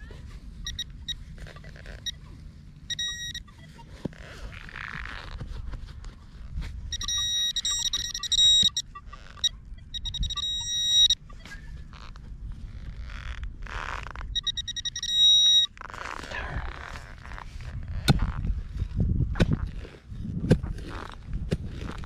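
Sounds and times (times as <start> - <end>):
pinpointer beeping in rapid pulses: 0.6 - 2.2, 2.8 - 4.0, 6.9 - 11.6, 14.3 - 15.7
digging scrapes and knocks in soil: 15.8 - 22.0.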